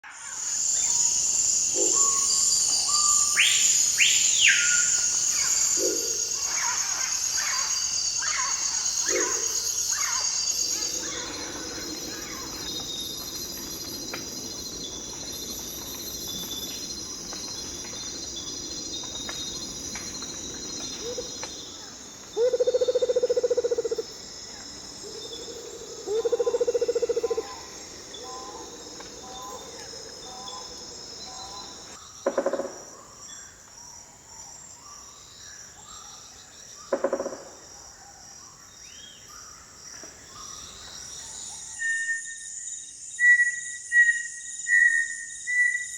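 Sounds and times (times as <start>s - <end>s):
crickets and insects chorus: 0.0s - 45.9s.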